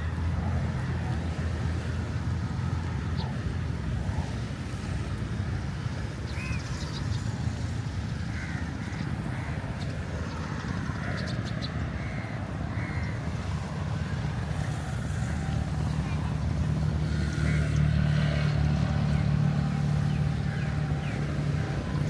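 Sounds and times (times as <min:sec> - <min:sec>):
crow cawing: 0:12.8 - 0:13.1.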